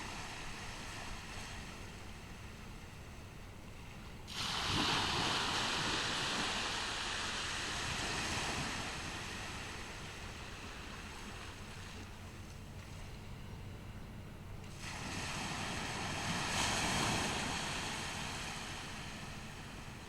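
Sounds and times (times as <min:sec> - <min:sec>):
ocean wave breaking on beach: 0:04.3 - 0:12.0, 0:14.7 - 0:20.0.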